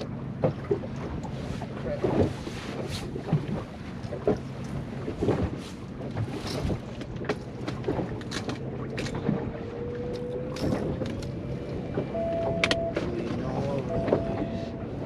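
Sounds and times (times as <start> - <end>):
boat motor running: 0.0 - 15.0
faint rising tone: 11.4 - 13.0, 13.7 - 15.0.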